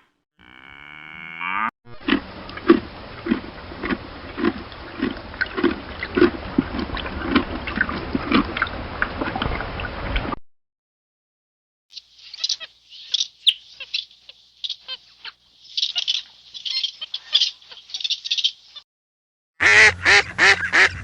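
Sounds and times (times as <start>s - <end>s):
cattle calling: 0.4s - 2.2s.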